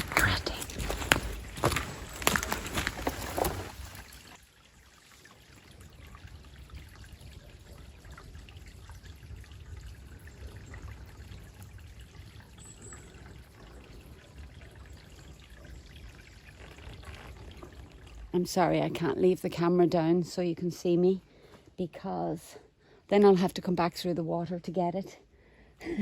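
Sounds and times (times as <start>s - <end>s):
water trickling: 0.0s - 24.4s.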